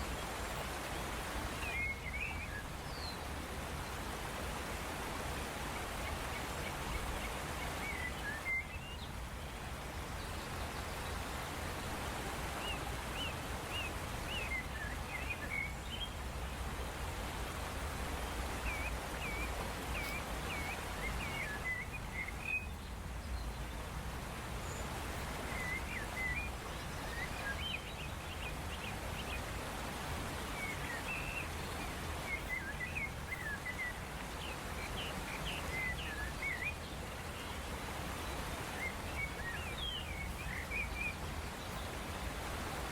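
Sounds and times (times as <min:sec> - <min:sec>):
outdoor background hiss: 0:00.0 - 0:42.9
small birds chirping: 0:18.2 - 0:24.0, 0:24.6 - 0:42.9.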